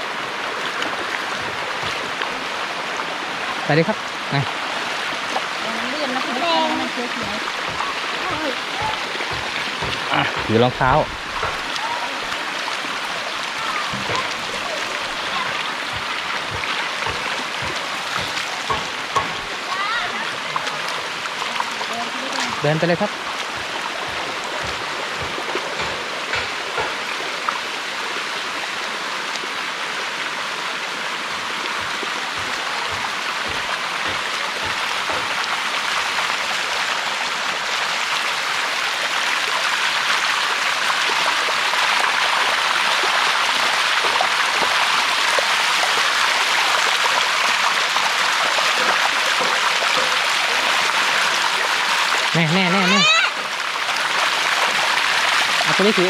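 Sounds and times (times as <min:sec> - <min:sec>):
waterfall rushing: 0:00.0 - 0:56.0
small knocks: 0:07.2 - 0:11.8, 0:13.8 - 0:19.5, 0:23.4 - 0:27.0, 0:31.8 - 0:35.5.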